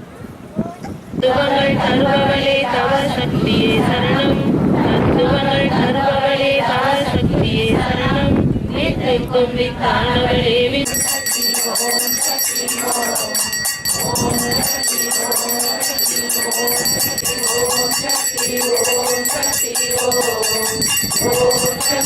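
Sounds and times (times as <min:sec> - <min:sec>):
people faintly singing: 0:01.2 - 0:22.0
hand bell ringing rapidly: 0:10.9 - 0:22.0.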